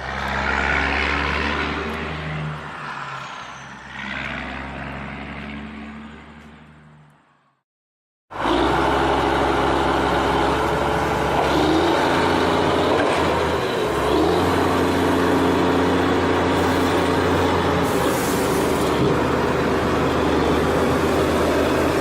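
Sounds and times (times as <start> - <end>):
diesel truck engine running: 8.3 - 22.0.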